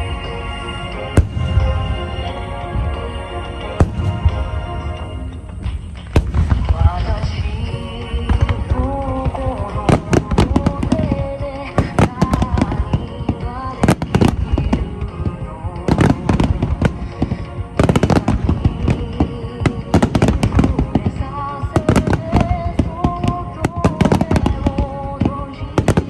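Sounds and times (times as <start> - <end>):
fireworks bursting: 0.0 - 26.0
music playing: 0.0 - 26.0.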